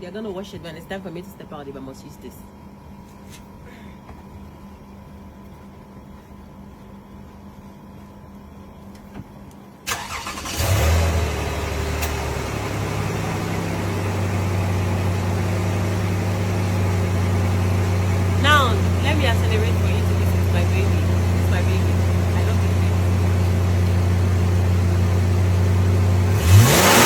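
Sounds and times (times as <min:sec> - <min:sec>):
car engine starting and idling: 0:09.8 - 0:27.0.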